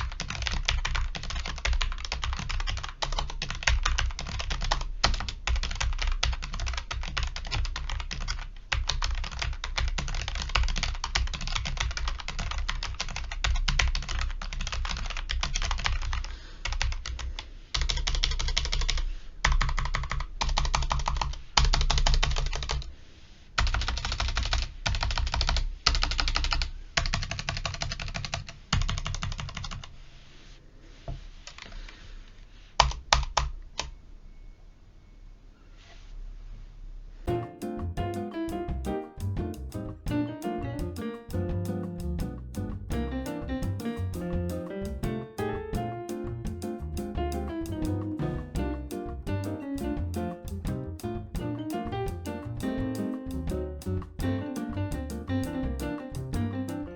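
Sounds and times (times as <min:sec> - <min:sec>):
mechanical keyboard typing: 0:00.0 - 0:22.9, 0:23.6 - 0:29.9, 0:32.8 - 0:33.9, 0:37.3 - 0:56.9.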